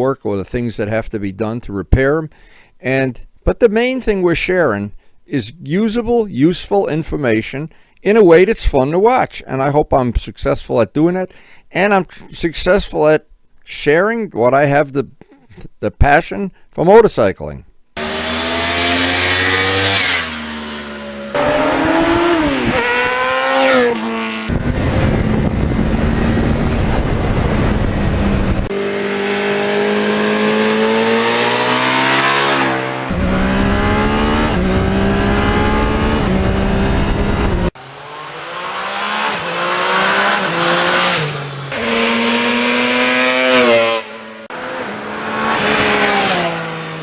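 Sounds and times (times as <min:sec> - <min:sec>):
motorcycle engines revving: 0:18.0 - 0:47.0
wind and road noise: 0:18.0 - 0:47.0.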